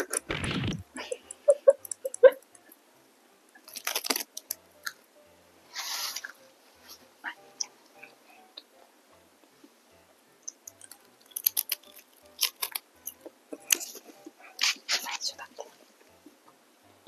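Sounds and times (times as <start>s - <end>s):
wet mouth clicks: 0.0s - 2.3s
chewing clicks: 1.3s - 2.2s, 10.5s - 14.8s
crunchy bite: 3.7s - 4.6s, 10.7s - 13.9s.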